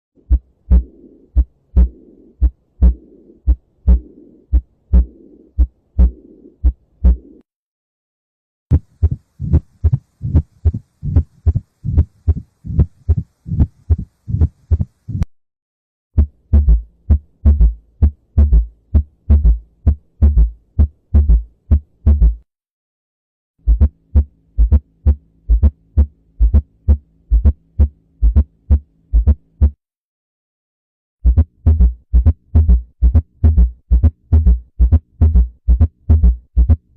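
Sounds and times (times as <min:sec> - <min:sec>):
heart murmur whooshing: 0:00.2 - 0:07.3, 0:08.7 - 0:15.3
heartbeat lub-dub: 0:00.2 - 0:07.4, 0:08.7 - 0:15.3, 0:16.2 - 0:22.4, 0:23.6 - 0:29.8, 0:31.2 - 0:36.9.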